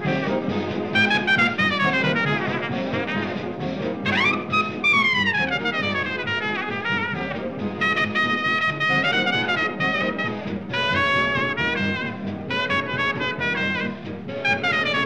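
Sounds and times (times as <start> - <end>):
instrumental music: 0.0 - 15.0.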